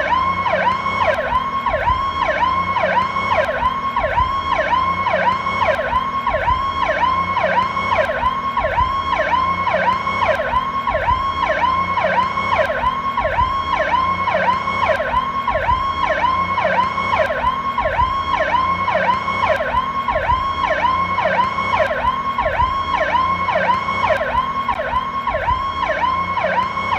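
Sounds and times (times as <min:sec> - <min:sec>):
ambulance siren yelping: 0:00.0 - 0:26.9.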